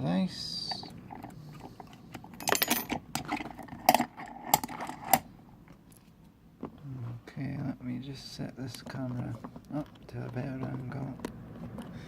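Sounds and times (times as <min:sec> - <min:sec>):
metal lock clinking and rattling: 0:01.1 - 0:05.2.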